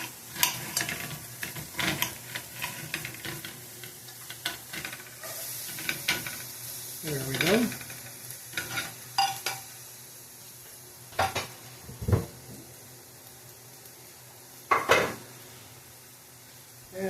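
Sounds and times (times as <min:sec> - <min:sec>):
utensils and pan clattering: 0:00.0 - 0:09.8
onion sizzling in butter: 0:00.0 - 0:17.0.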